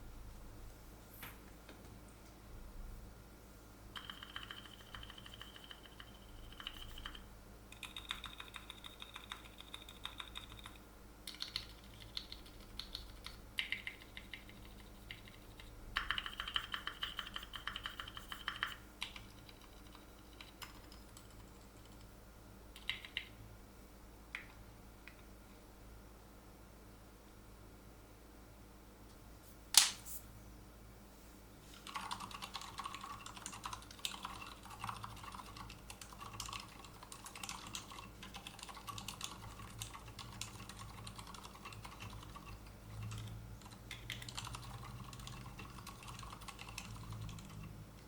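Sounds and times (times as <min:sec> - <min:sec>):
typing on mechanical keyboard: 0:03.9 - 0:22.1, 0:22.8 - 0:23.3, 0:31.8 - 0:47.7.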